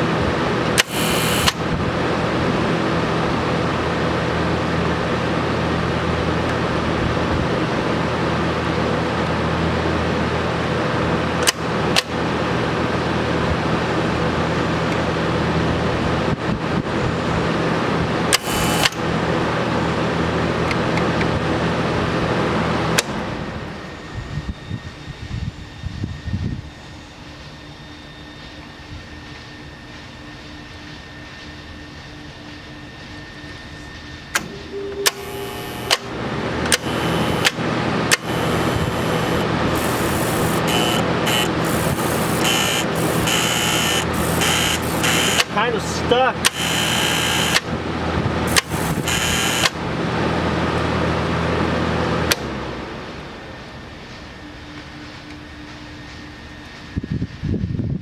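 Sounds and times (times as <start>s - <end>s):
welder transformer humming: 0.0s - 23.1s, 34.3s - 55.5s
relay clicks: 0.7s - 1.6s, 18.3s - 19.1s, 34.4s - 45.6s, 46.4s - 47.8s, 48.5s - 49.8s.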